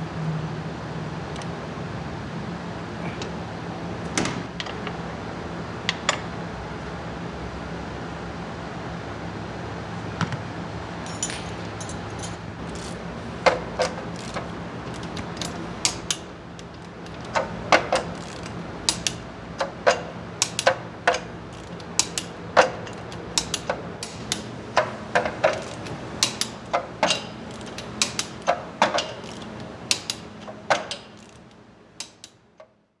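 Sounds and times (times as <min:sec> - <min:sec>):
steady low hum: 0:00.0 - 0:32.6
metal tools clinking and knocking: 0:11.0 - 0:16.2.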